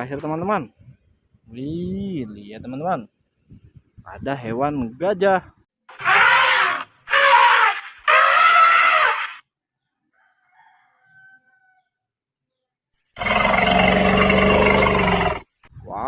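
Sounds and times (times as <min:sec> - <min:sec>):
toy elephant calls: 0:05.9 - 0:09.4.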